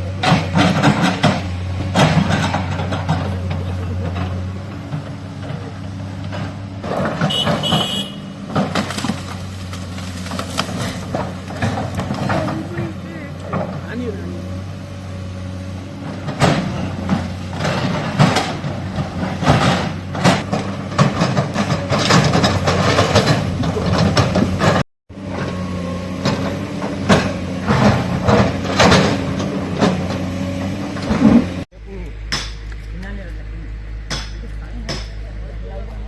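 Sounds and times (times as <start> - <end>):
excavator diesel engine running: 0.0 - 36.0.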